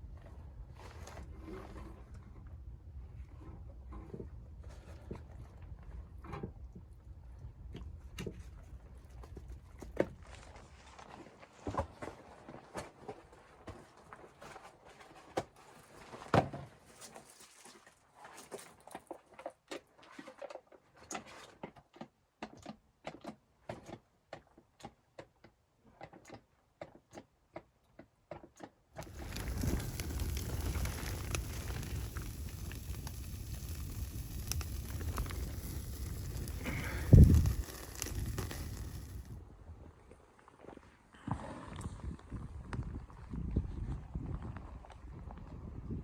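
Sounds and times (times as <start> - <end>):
steady rushing noise: 29.0 - 39.3
faint crackles: 29.0 - 39.4.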